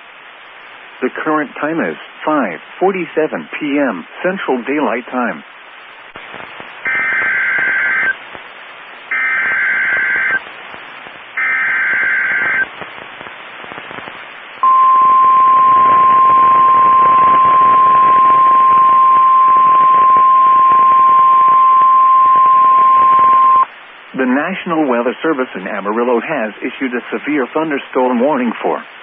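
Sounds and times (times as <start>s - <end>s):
radio static hiss: 0.0s - 29.0s
buzzy data bursts: 6.3s - 8.2s, 9.1s - 23.6s
steady warning alarm tone: 6.9s - 8.1s, 9.1s - 10.4s, 11.4s - 12.6s, 14.6s - 23.6s.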